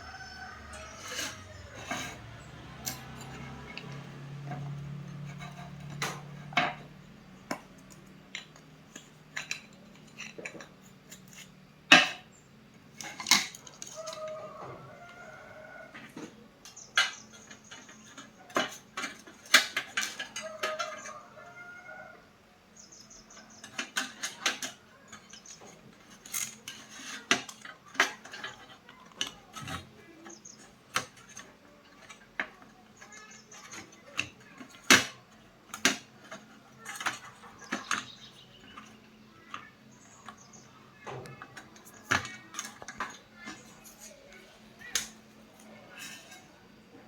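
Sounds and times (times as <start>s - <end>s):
small tools clicking and clinking: 0.0s - 15.3s, 15.9s - 21.6s, 23.1s - 46.6s.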